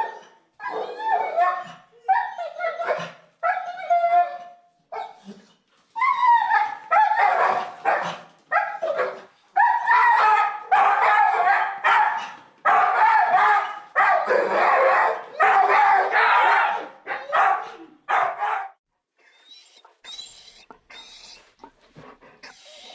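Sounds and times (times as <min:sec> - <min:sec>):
dog barking: 0:06.9 - 0:18.8.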